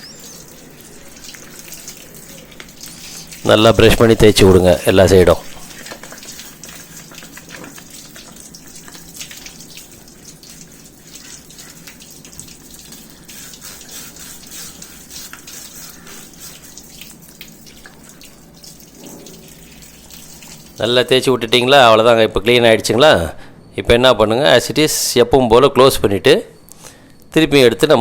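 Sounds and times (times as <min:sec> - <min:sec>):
brush scrubbing: 0:00.0 - 0:04.2, 0:05.4 - 0:09.2, 0:13.2 - 0:17.0
tap water running and splashing: 0:00.0 - 0:21.6.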